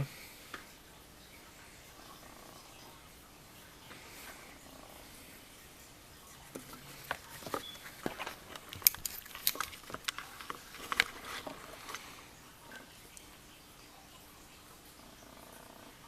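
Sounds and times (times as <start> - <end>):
small metal lock parts clicking: 8.7 - 10.3.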